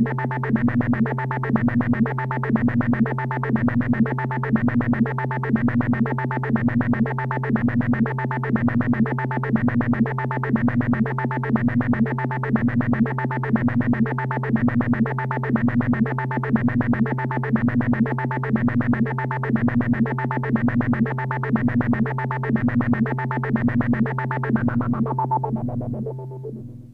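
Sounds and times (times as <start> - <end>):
buzzy vocoder synth tone: 0.0 - 26.9
repeating pitched synth figure: 22.1 - 26.7.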